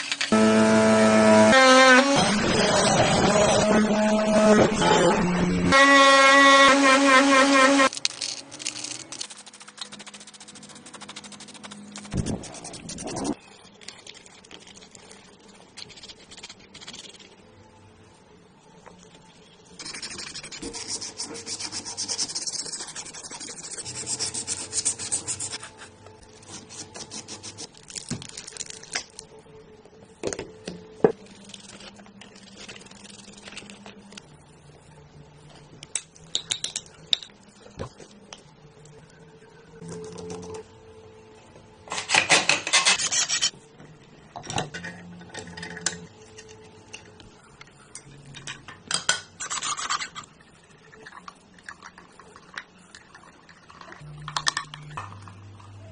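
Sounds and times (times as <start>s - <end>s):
scraping and rubbing: 7.9s - 13.4s, 41.9s - 43.5s.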